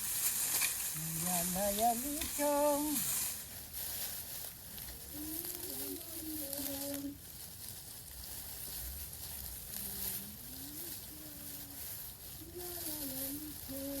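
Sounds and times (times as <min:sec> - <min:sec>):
dry stalks rustling and crackling: 0:00.0 - 0:14.0
person singing drawn-out notes: 0:05.1 - 0:07.2.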